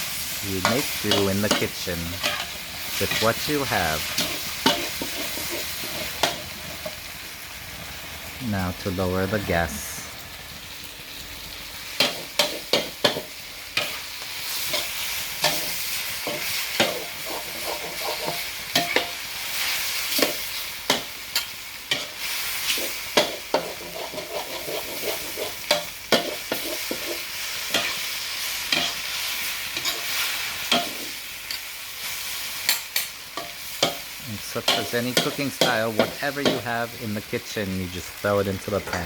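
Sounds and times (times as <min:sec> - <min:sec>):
noodles sizzling in a pan: 0:00.0 - 0:39.0
spatula clacking and scraping pan: 0:00.6 - 0:07.1, 0:11.9 - 0:31.7, 0:32.6 - 0:36.8.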